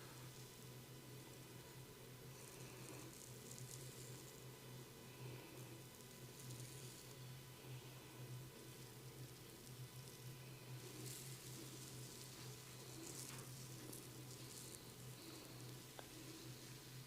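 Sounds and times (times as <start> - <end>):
steady low hum: 0.0 - 17.0
fingers scratching through hair: 2.4 - 4.5, 8.7 - 17.0.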